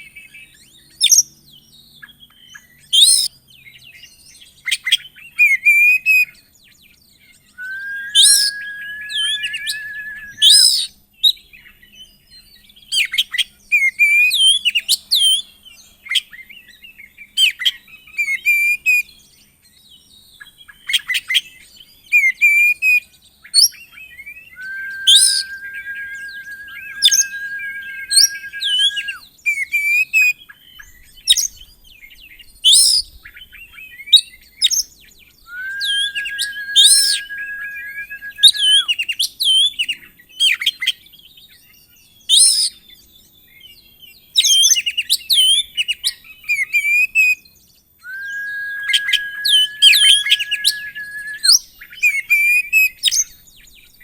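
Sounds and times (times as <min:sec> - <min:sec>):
songbird whistling and chirping: 0:00.4 - 0:03.3, 0:07.3 - 0:13.2, 0:23.5 - 0:29.9, 0:32.7 - 0:39.8, 0:41.7 - 0:43.8, 0:46.7 - 0:53.4
long flat bird whistle: 0:07.5 - 0:10.9, 0:24.3 - 0:29.3, 0:35.5 - 0:39.0, 0:48.0 - 0:53.2.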